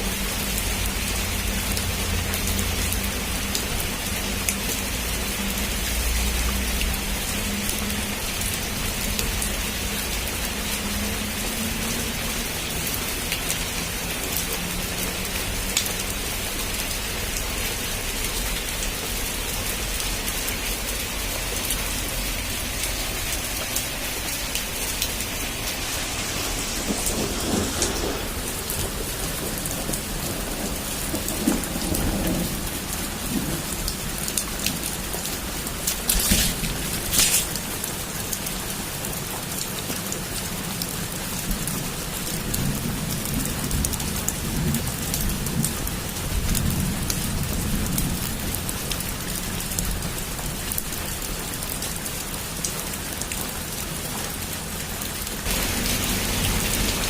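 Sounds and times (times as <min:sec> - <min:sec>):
heavy rain: 0:00.0 - 0:57.0
thunder rumbling: 0:22.4 - 0:37.9.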